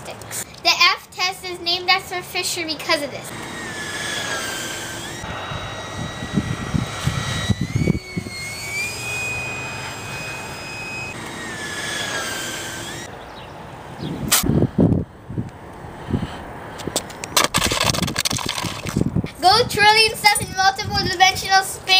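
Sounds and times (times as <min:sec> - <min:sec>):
electric ducted fan whining: 0:03.2 - 0:13.1
wind rumbling on microphone: 0:05.2 - 0:09.0, 0:14.0 - 0:21.5.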